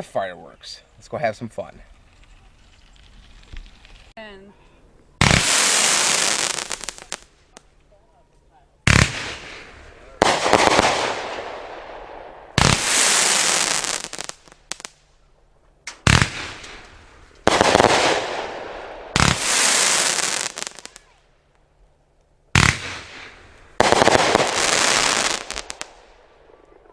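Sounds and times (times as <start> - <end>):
firework bangs: 5.2 - 7.6, 8.8 - 15.0, 15.8 - 21.2, 22.5 - 26.6.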